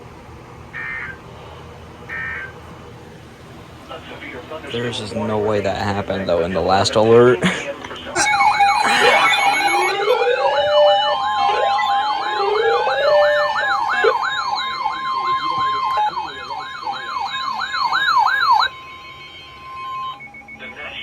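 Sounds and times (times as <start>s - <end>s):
siren yelping: 0.7s - 1.2s, 2.1s - 2.7s, 8.1s - 21.0s
steady siren tone: 0.7s - 1.3s, 2.0s - 3.0s, 8.2s - 21.0s
rising siren wails: 2.0s - 2.8s, 8.2s - 21.0s.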